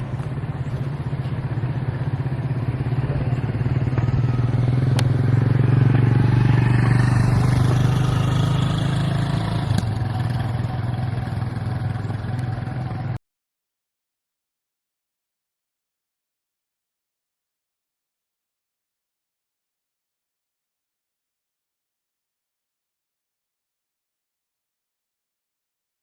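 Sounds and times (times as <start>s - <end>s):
engine running with low hum: 0.0s - 13.2s.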